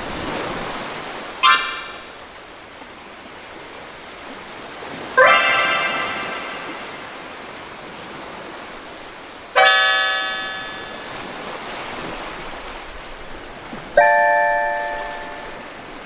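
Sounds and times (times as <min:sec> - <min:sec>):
sparse bell-like notes: 0:01.4 - 0:02.2, 0:05.2 - 0:07.4, 0:09.6 - 0:11.3, 0:14.0 - 0:15.8.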